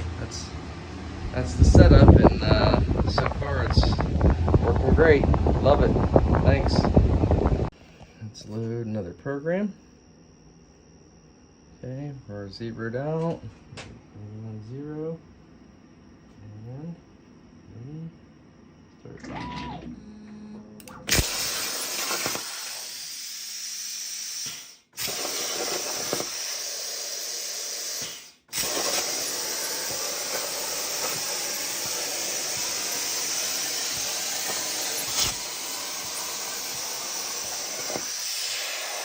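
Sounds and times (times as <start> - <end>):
plasma torch hissing: 21.0 - 39.0
motors whining: 24.4 - 39.0.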